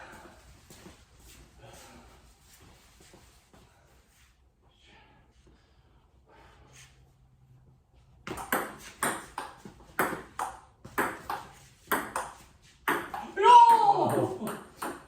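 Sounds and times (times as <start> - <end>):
ping-pong ball hitting paddles: 8.3 - 15.0.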